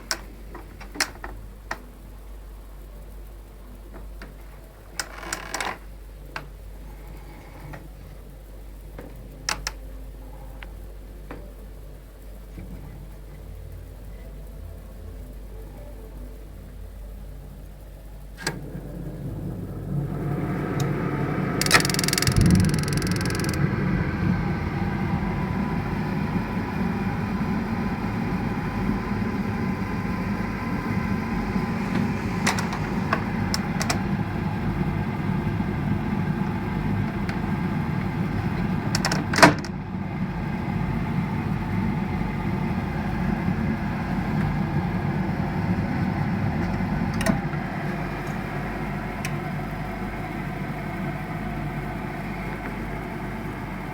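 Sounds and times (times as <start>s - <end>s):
gas boiler running: 0.0s - 53.9s
boiler click: 18.4s - 23.9s.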